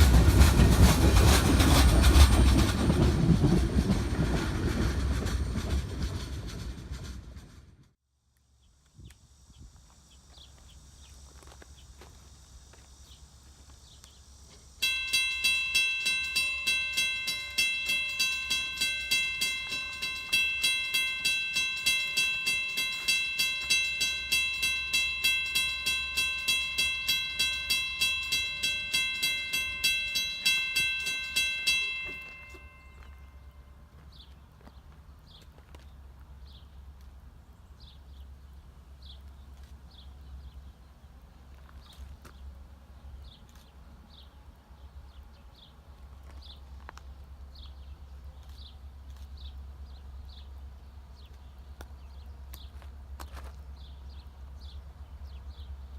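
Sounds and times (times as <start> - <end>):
railroad crossing bell ringing: 14.8 - 34.1.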